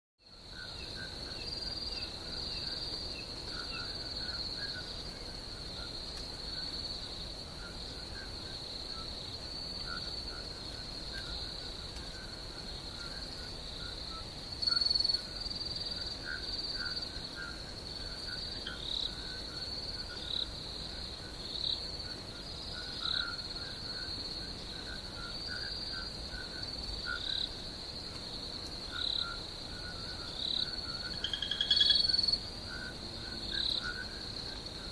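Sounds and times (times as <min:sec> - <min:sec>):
crickets trilling: 0:00.2 - 0:34.9
lower chirping calls: 0:31.2 - 0:32.3.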